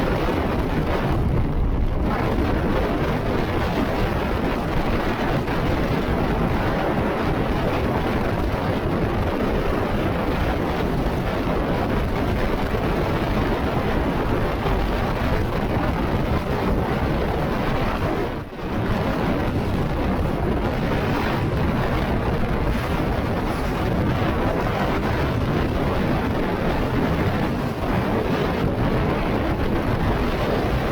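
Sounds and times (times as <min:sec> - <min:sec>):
strong wind buffeting microphone: 0:00.0 - 0:30.9.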